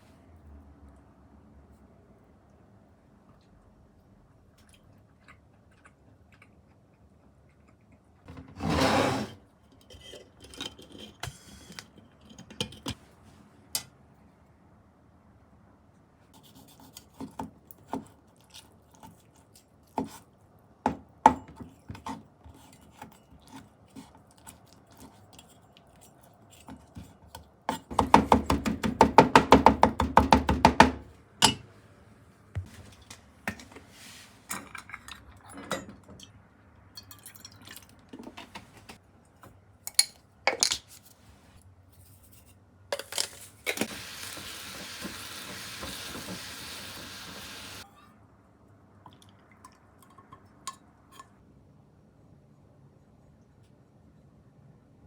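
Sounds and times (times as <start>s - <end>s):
water running from a tap: 43.9s - 47.8s.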